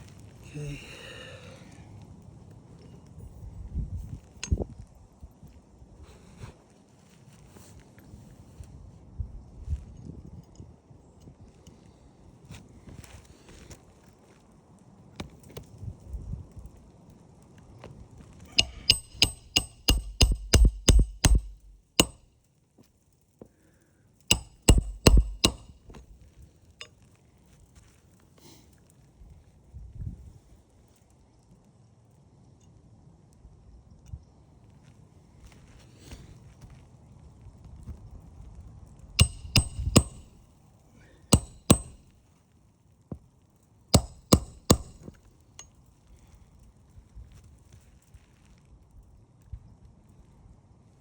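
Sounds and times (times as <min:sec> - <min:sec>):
hammer striking on roof: 0:18.6 - 0:22.2, 0:24.3 - 0:26.0, 0:39.2 - 0:40.3, 0:41.4 - 0:42.0, 0:44.0 - 0:45.1.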